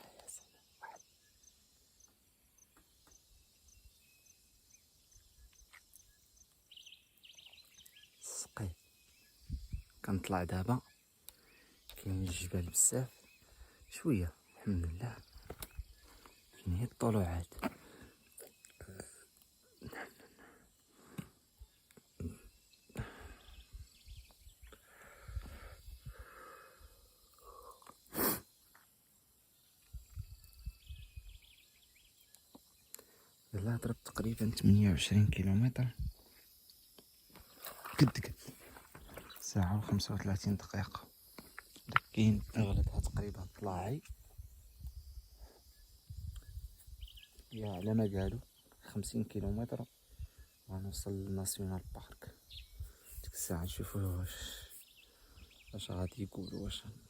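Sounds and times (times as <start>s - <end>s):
cyclist breathing hard: 22.9s - 23.8s, 24.7s - 27.2s.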